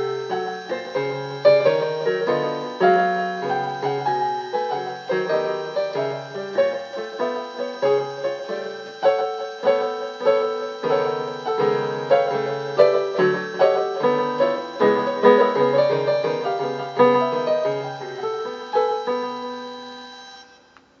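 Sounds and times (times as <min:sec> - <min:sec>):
piano music: 0:00.0 - 0:20.5.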